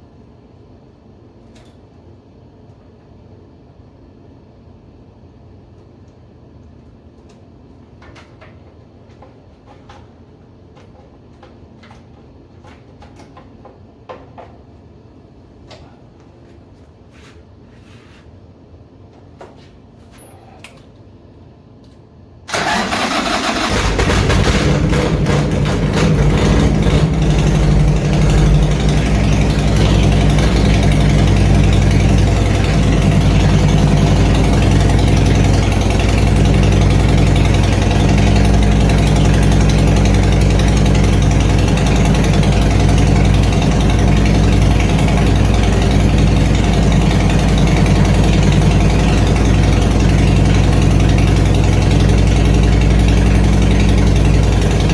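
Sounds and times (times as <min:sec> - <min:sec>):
motorcycle engine starting and idling: 0:22.5 - 0:54.9.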